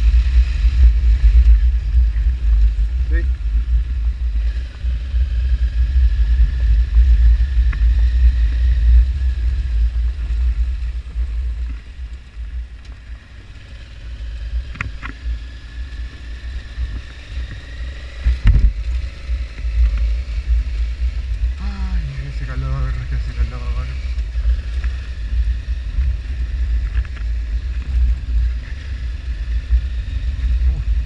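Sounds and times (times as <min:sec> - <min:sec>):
motorcycle engine rumble: 0:00.0 - 0:31.0
wind: 0:00.0 - 0:31.0.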